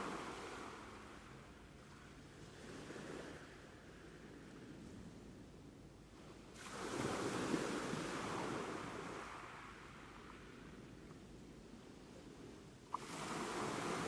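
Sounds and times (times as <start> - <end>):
ocean waves washing on shore: 0.0 - 4.8, 6.6 - 10.9, 12.8 - 14.0.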